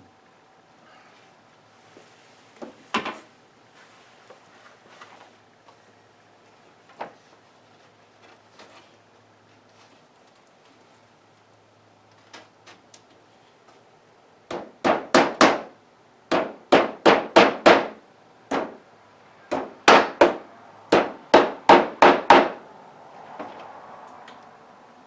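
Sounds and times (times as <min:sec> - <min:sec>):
hammer striking wooden frame: 0:14.5 - 0:18.8, 0:19.5 - 0:22.6.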